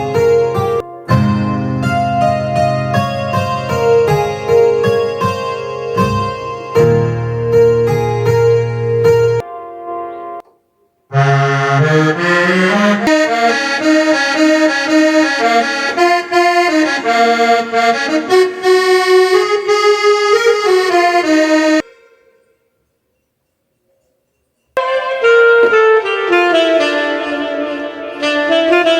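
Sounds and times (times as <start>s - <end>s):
keyboard playing reed-like melody: 0.0s - 22.5s, 24.8s - 28.9s.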